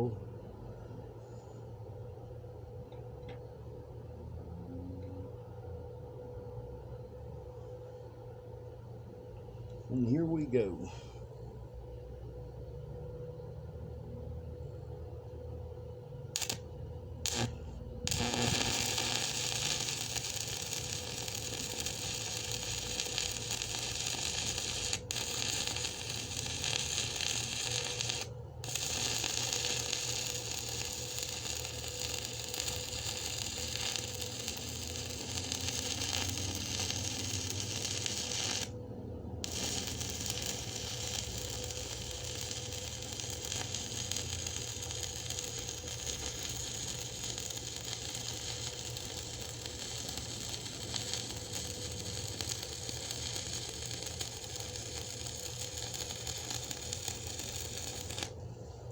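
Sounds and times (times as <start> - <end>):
welding arc crackling: 16.3 - 16.6, 17.2 - 38.7, 39.4 - 58.4.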